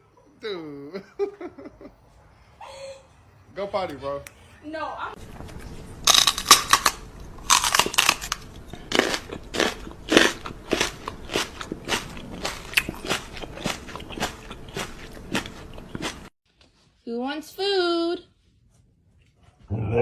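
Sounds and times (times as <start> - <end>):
pet chewing crunchy food: 5.2 - 16.3.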